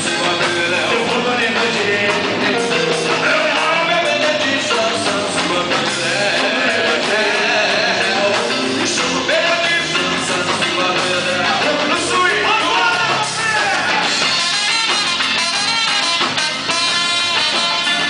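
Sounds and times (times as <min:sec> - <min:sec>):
samba-rock band playing: 0:00.0 - 0:18.0.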